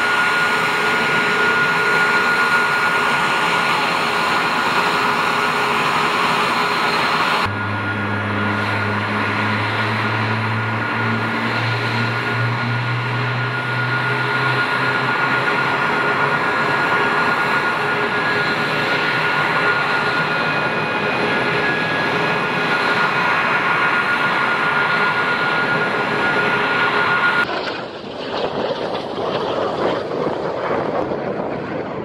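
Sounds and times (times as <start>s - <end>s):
high whine: 0.0s - 28.2s
fighter jet engine roaring: 0.0s - 32.0s.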